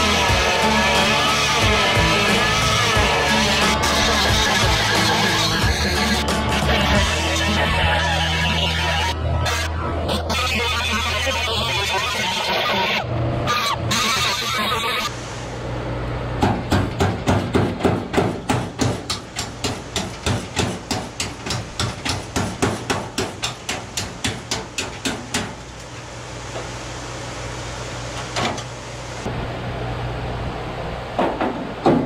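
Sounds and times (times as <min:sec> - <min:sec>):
background music: 0:00.0 - 0:10.0
rapid hammering: 0:16.4 - 0:25.6.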